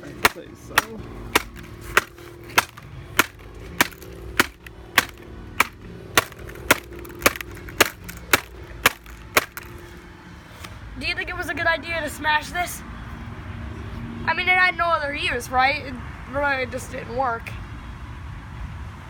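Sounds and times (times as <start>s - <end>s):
hammer striking a laptop: 0.2s - 9.8s.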